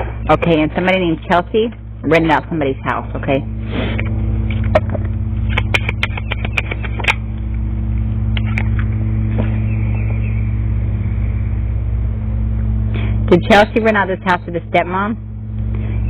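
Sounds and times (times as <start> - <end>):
low engine hum: 0.0 - 16.0
sharp clicks: 5.5 - 7.2.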